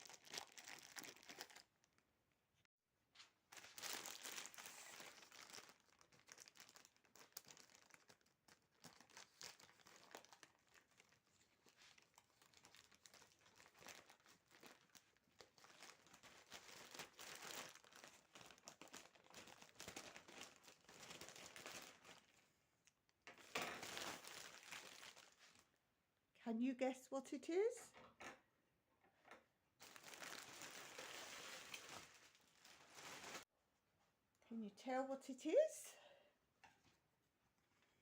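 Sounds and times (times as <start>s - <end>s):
packaging tearing: 0.0s - 1.7s, 3.6s - 11.2s, 11.9s - 22.2s, 29.8s - 33.4s
packaging crinkling and rustling: 0.0s - 2.0s, 3.3s - 22.4s, 23.4s - 25.7s, 29.8s - 33.5s.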